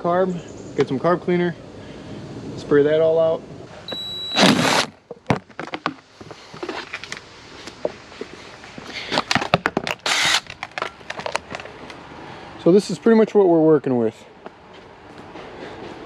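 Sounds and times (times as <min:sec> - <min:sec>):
plastic bodywork and tools clicking: 0:09.1 - 0:12.0.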